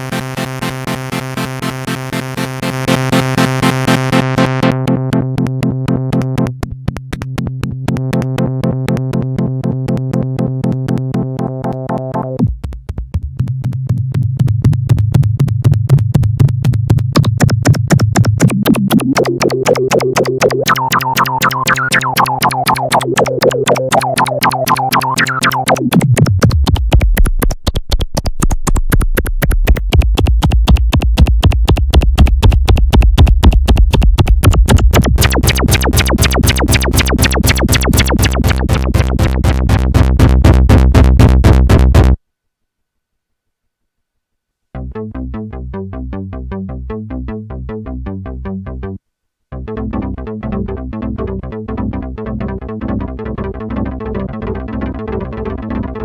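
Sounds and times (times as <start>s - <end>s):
synthesizer pulsing chords: 0.0s - 6.5s, 7.2s - 12.6s, 14.6s - 42.2s, 44.8s - 56.0s.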